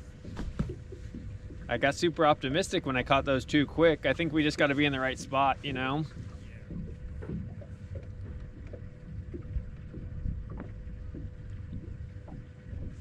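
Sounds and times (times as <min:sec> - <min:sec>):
faint steady hum: 0:00.0 - 0:13.0
wind and water rumble: 0:00.0 - 0:13.0
light knocks and clicks: 0:00.2 - 0:01.7.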